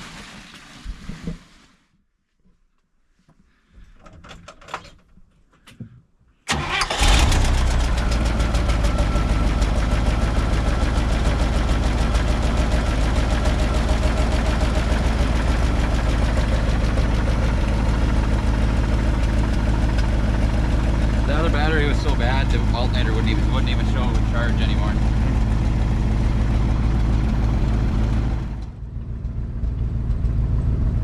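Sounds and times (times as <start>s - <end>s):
engine starting and idling: 6.5s - 31.0s.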